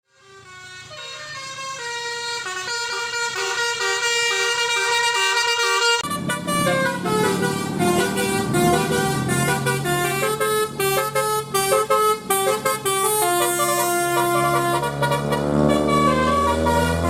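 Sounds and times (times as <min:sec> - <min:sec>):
musical air horn melody: 0:00.1 - 0:17.0.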